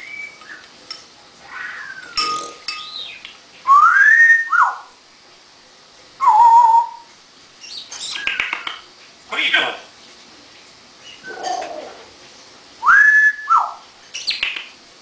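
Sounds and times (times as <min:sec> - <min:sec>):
rough parrot calls: 0:01.4 - 0:02.6, 0:11.1 - 0:12.1
parrot whistling: 0:01.5 - 0:02.3, 0:03.7 - 0:04.9, 0:06.2 - 0:07.1, 0:12.8 - 0:13.8.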